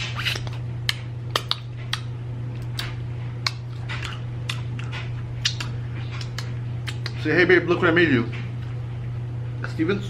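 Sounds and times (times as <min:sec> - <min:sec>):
crunching while eating: 0:00.0 - 0:07.2
steady low hum: 0:00.0 - 0:10.0
mouth clicks: 0:00.2 - 0:07.2.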